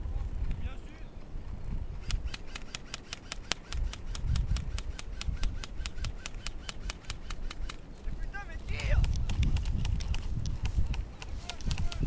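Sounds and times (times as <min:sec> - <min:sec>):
airsoft gun rapid firing: 0:02.0 - 0:07.8.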